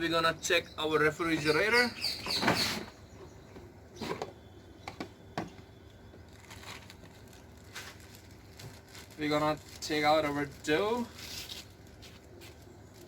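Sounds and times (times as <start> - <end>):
rustle: 6.3 - 13.0.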